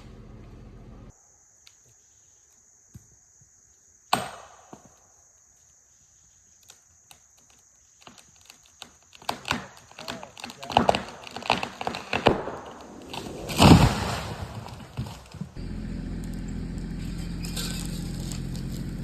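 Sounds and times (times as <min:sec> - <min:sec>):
wood cracking: 0:06.6 - 0:19.0.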